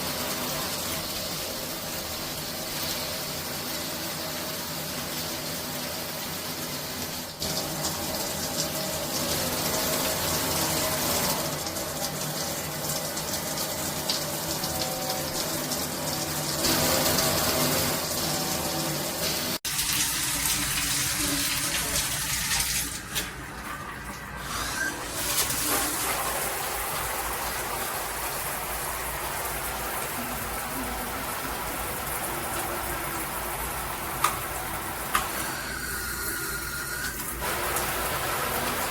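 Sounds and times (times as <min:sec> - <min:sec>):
water spraying from shower head: 0:19.2 - 0:38.9.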